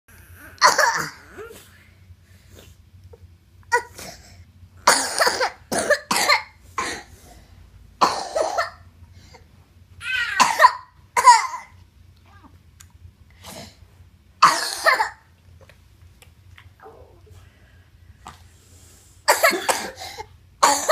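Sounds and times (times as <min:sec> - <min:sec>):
person coughing: 0:00.6 - 0:01.3, 0:03.7 - 0:07.1, 0:08.0 - 0:08.8, 0:10.4 - 0:11.8, 0:14.4 - 0:15.2, 0:19.3 - 0:20.9.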